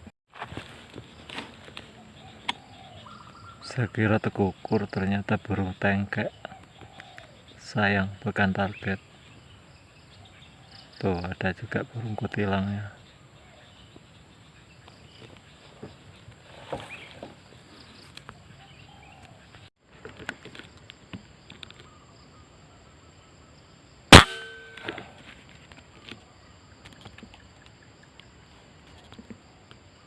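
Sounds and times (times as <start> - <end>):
air rifle shot: 24.1 - 25.1.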